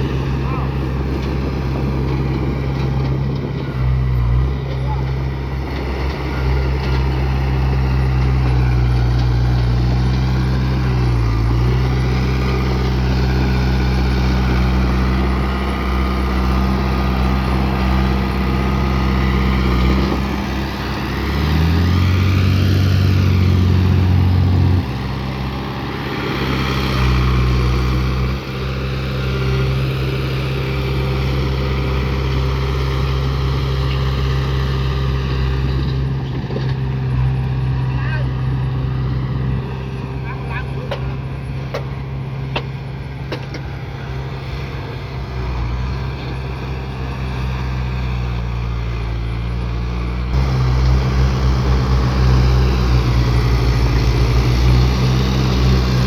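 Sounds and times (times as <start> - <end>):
heavy diesel engine running: 0.0 - 56.0
deeper louder engine note: 47.6 - 56.0.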